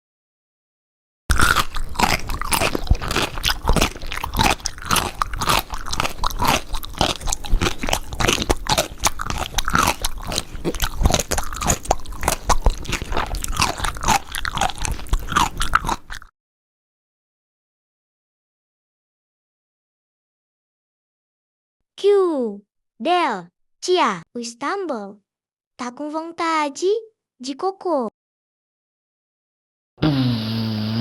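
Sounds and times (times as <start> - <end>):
baby chewing and smacking: 1.3 - 16.3.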